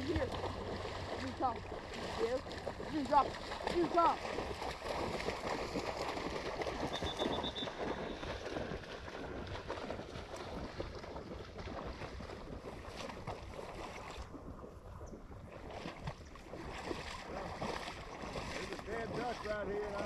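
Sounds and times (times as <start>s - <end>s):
water splashing and sloshing: 0.0s - 20.0s
wind rumbling on microphone: 0.0s - 20.0s
faint high chirps: 6.9s - 7.8s.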